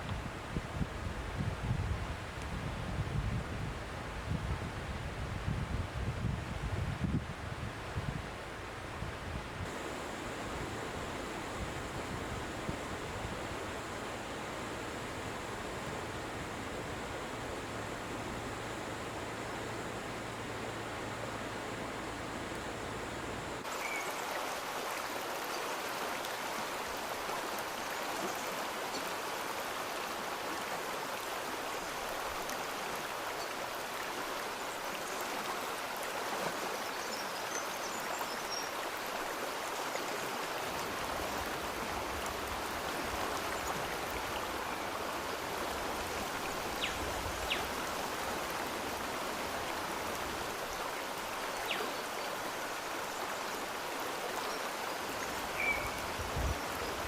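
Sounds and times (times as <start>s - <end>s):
stream water rushing: 9.6s - 57.0s
faint ticks: 9.7s - 23.7s.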